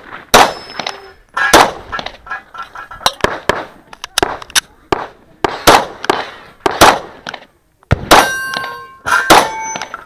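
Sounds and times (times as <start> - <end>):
pistol shots: 0.3 - 2.1, 3.2 - 9.9
steel targets clanging: 0.4 - 3.5, 8.1 - 10.0.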